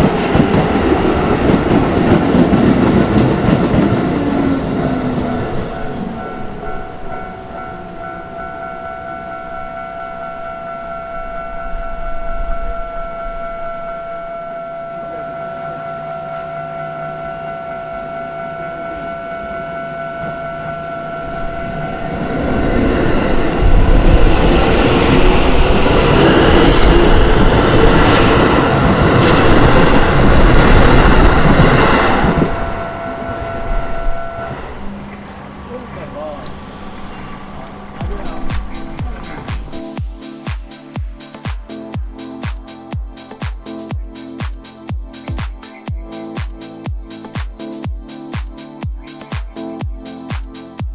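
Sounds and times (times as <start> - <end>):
train passing: 0.0 - 50.9
level crossing bell ringing: 4.7 - 22.1.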